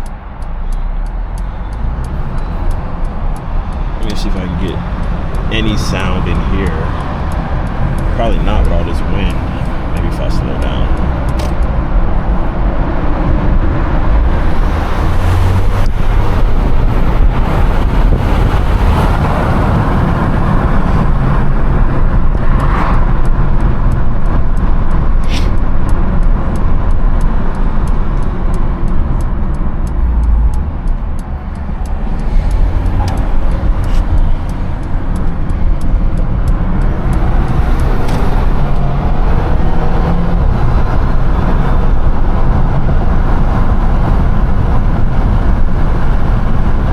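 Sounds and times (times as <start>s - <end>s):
car engine and road noise: 0.0s - 46.9s
wind on microphone: 11.0s - 29.2s.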